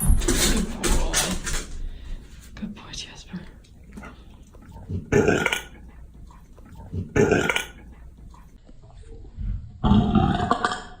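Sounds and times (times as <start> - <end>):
dog burping: 4.0 - 8.6.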